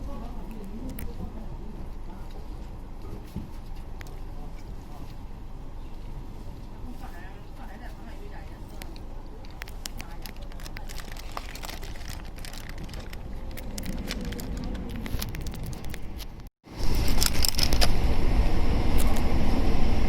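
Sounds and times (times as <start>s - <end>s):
train rumble from on board: 1.1s - 20.0s
clicks and crackles: 8.8s - 17.9s.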